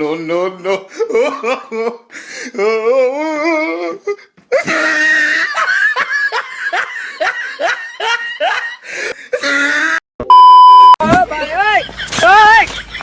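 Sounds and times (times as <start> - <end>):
hearty belly laughter: 4.5 - 9.5, 11.8 - 13.0.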